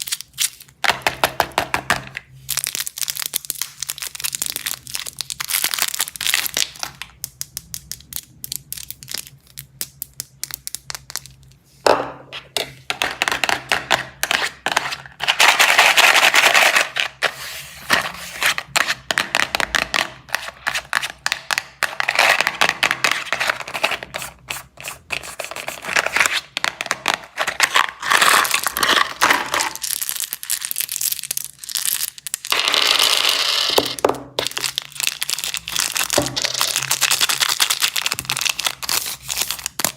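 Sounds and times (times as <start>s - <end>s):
plastic wrappers crinkling: 0.0s - 0.8s, 2.0s - 11.6s, 25.3s - 39.9s.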